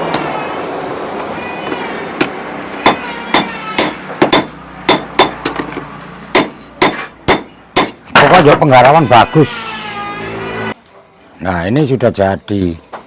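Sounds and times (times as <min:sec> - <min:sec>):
hammer striking iron on anvil: 0:02.2 - 0:08.9.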